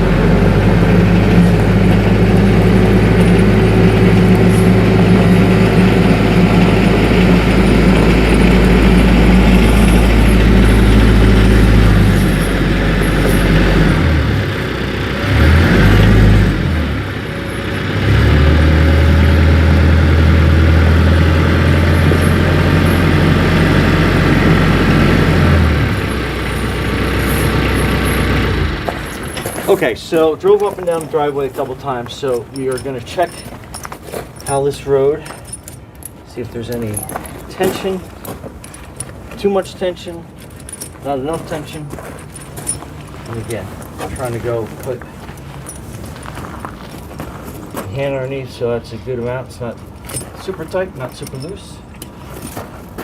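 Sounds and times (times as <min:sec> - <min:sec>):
tractor diesel engine running: 0:00.0 - 0:48.3.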